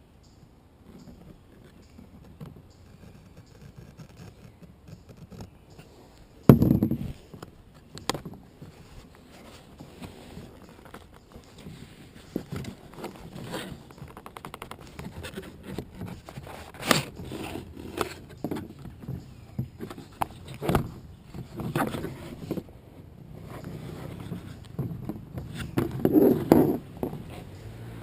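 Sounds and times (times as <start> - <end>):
cardboard and plastic rustling: 8.1 - 22.7.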